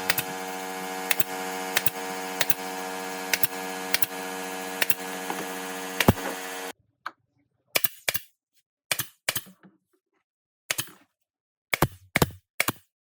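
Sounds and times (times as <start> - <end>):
machine hum: 0.0 - 6.7.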